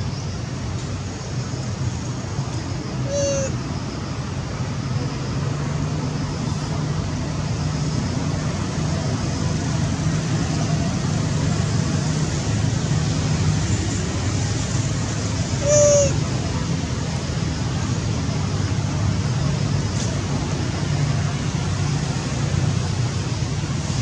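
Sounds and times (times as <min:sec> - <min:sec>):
distant traffic hum: 0:00.0 - 0:24.0
monkey high-pitched cries: 0:03.0 - 0:03.6, 0:15.6 - 0:16.3.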